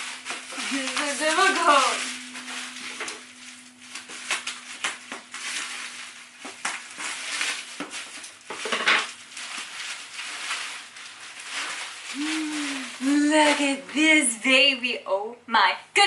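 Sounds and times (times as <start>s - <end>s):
cardboard box crunch: 0.0s - 13.9s
packaging crinkling and rustling: 0.0s - 14.2s.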